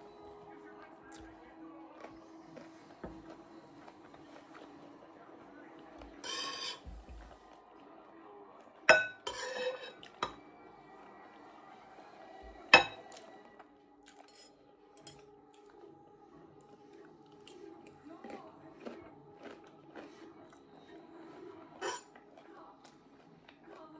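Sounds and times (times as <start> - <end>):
cutlery clinking on a plate: 6.2 - 7.3, 8.9 - 10.4, 12.7 - 13.3, 14.1 - 15.2, 21.8 - 22.1.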